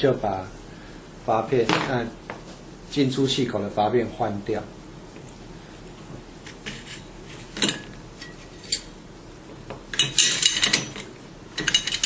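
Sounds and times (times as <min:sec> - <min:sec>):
metallic clinks and rattling: 0:07.6 - 0:08.9, 0:09.9 - 0:12.0.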